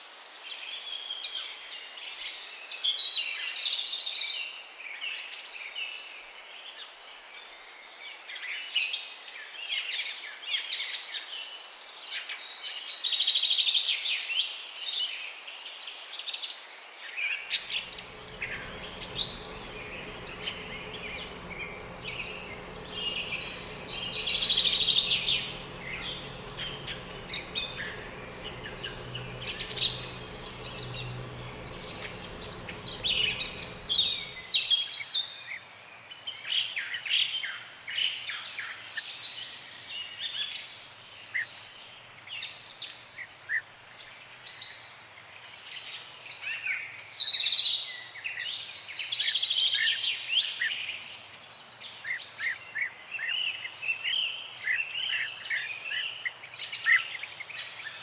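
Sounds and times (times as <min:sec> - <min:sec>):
low steady hum: 0:17.6 - 0:34.6.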